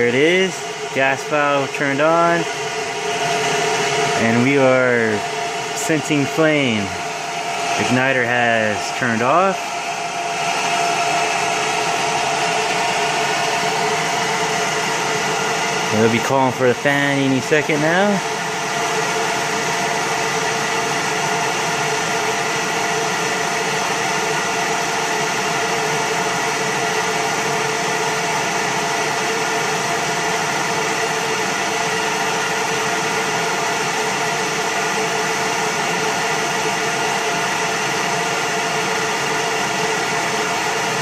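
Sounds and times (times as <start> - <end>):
constant motor hum: 0.0 - 41.0
gas furnace rushing noise: 0.0 - 41.0.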